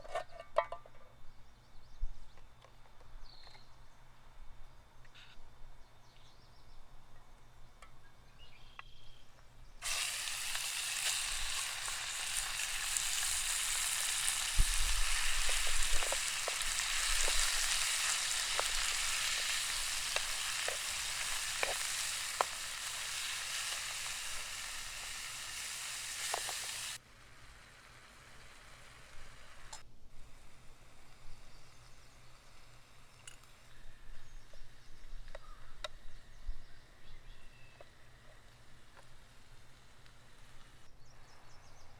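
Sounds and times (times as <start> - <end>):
food sizzling in hot oil: 9.8 - 29.8.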